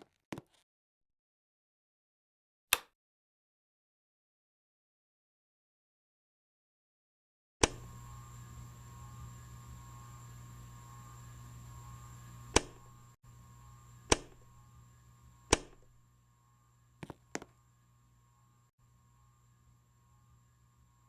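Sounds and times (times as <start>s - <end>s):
fan switch clicks: 7.6s - 7.9s, 12.5s - 13.0s, 14.1s - 14.5s, 15.5s - 15.9s
electric fan motor humming: 7.6s - 21.0s.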